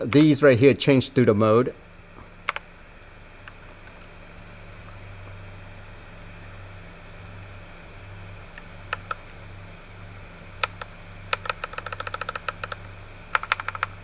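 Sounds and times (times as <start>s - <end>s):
mechanical keyboard key presses: 10.6s - 12.8s, 13.4s - 14.0s.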